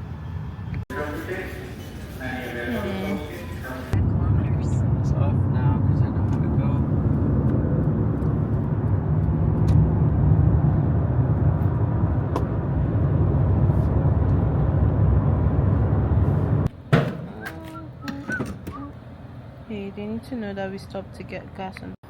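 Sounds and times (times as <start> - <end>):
car engine and tyres rumbling: 0.0 - 1.4, 3.6 - 22.0
sharp knock: 16.9 - 17.4.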